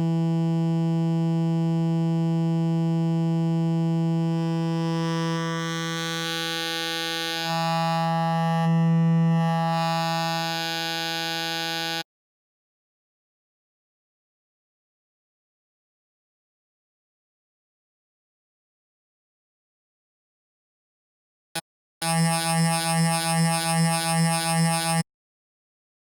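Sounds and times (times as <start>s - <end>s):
synthesizer low held note: 0.0s - 6.3s, 7.2s - 12.0s.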